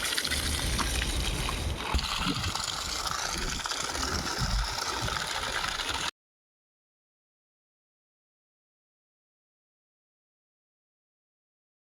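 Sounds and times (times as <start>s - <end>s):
water rushing from pipe: 0.0s - 6.1s
low uneven rumbles: 0.2s - 6.0s.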